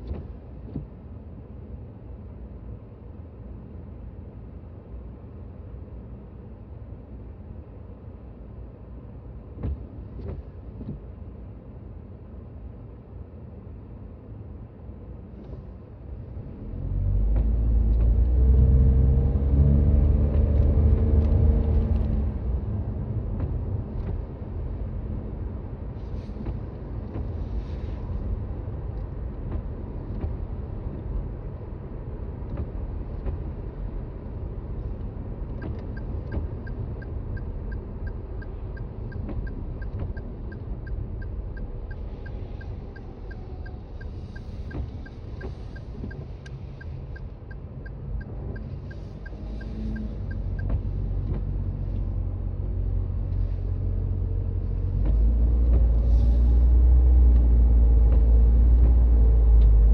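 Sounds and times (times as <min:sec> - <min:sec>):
road noise: 0:00.0 - 0:59.9
car engine pulling away: 0:16.4 - 0:24.4.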